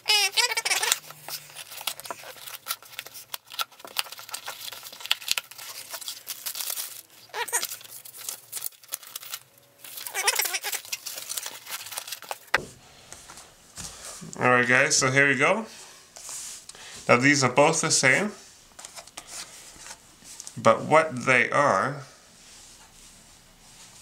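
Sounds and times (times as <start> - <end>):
packaging tearing and crinkling: 0.1 - 12.6.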